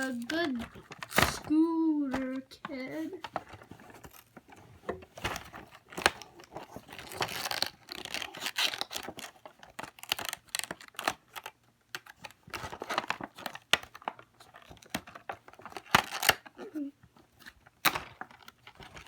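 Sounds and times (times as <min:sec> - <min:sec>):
packaging tearing and crinkling: 0:00.0 - 0:02.3, 0:05.2 - 0:16.8.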